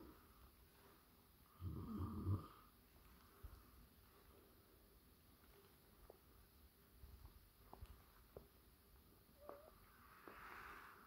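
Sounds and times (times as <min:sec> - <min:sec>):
sleeper breathing: 0:09.4 - 0:11.0.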